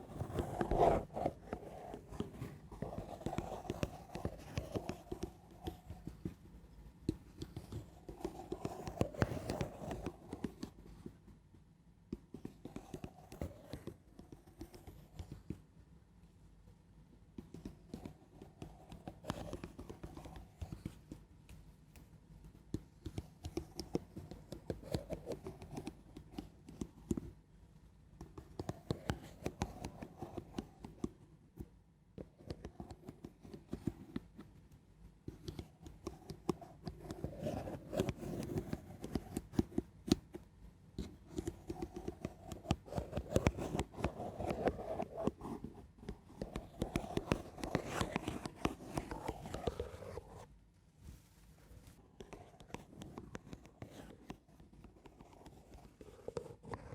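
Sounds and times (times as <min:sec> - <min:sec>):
crackly scratching close to microphone: 0:00.0 - 0:06.1, 0:41.0 - 0:56.9.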